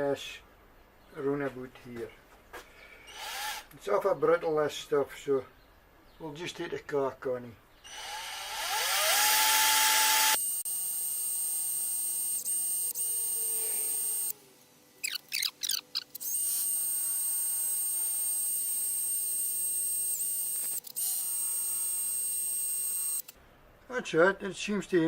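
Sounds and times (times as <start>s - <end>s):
rotary power tool whining: 3.1s - 3.7s, 7.9s - 14.4s, 15.0s - 23.4s
rotary tool grinding: 7.9s - 14.4s, 15.0s - 23.4s.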